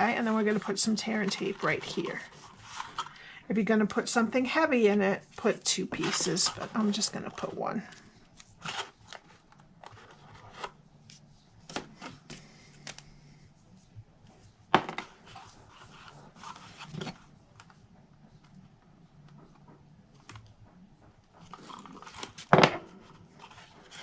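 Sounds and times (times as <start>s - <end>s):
paper rustling: 0.0s - 3.2s, 5.4s - 13.1s.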